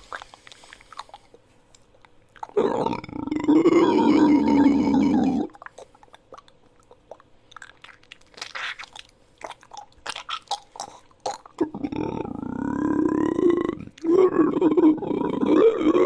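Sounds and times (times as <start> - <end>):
crunching and clicking chewing: 0.0 - 3.2, 5.5 - 16.0
creature growl: 2.6 - 5.5, 11.6 - 16.0.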